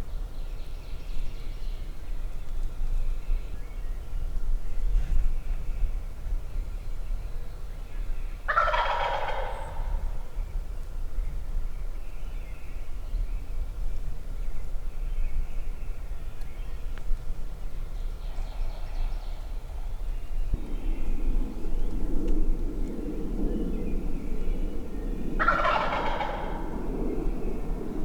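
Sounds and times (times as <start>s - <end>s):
turkey gobbling: 8.5s - 10.2s, 25.4s - 26.8s
faint turkey calls: 8.5s - 10.4s, 24.4s - 27.6s.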